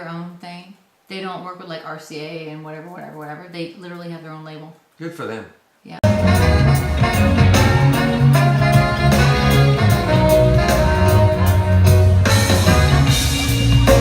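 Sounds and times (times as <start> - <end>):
heavy bass line: 6.0 - 14.0
loud band music: 6.0 - 14.0
steady drum beat: 6.0 - 14.0.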